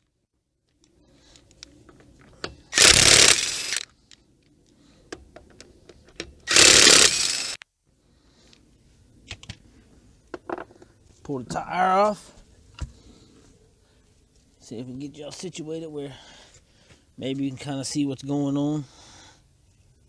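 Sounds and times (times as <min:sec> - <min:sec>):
impact wrench running: 0:02.8 - 0:03.8, 0:06.5 - 0:07.6
socket and nuts clicking: 0:02.8 - 0:03.8, 0:06.2 - 0:07.6.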